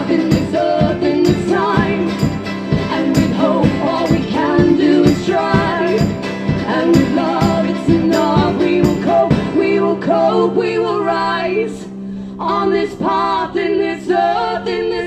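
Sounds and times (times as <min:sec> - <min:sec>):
percussive beat: 0:00.0 - 0:09.6
live band music with singing: 0:00.0 - 0:10.7.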